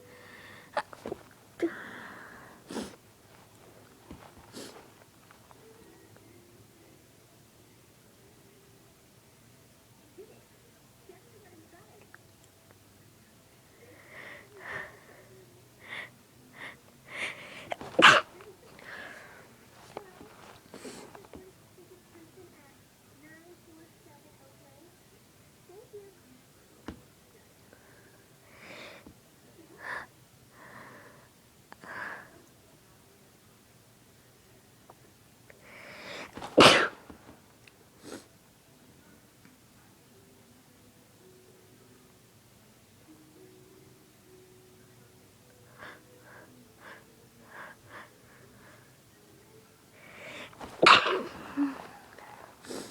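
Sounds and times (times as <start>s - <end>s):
woman breathing sharply: 0.0s - 0.8s, 1.6s - 3.0s
woman gasping inhale: 0.0s - 0.8s, 1.6s - 3.0s, 50.0s - 52.9s
person gasping breaths: 0.0s - 5.0s, 13.8s - 18.0s, 18.7s - 21.2s, 50.0s - 52.9s
person sneezing: 0.8s - 3.0s, 17.2s - 21.2s, 36.3s - 37.2s, 50.3s - 52.9s
woman sneezing: 17.6s - 19.2s, 36.4s - 37.2s, 50.6s - 52.9s
sharp burst of breath: 50.1s - 52.9s.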